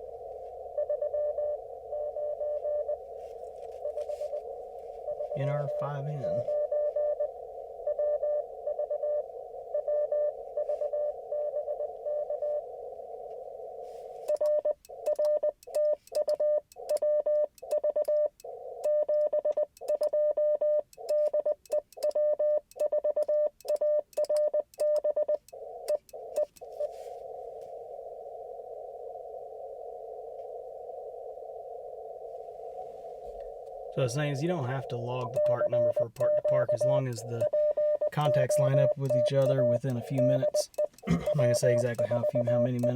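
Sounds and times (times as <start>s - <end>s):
receiver hiss: 0.0s - 22.9s, 23.6s - 42.9s
morse code beeps: 0.2s - 12.6s, 14.1s - 27.1s, 33.4s - 42.9s
morse sidetone dits and dahs: 34.0s - 42.9s.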